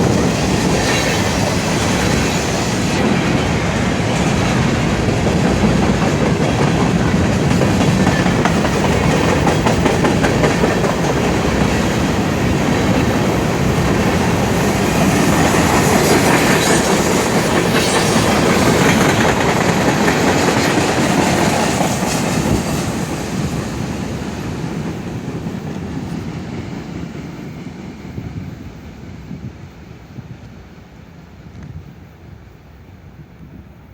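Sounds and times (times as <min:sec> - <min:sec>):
freight train rolling past: 0:00.0 - 0:33.9
wheels clicking over rail joints: 0:04.6 - 0:22.8.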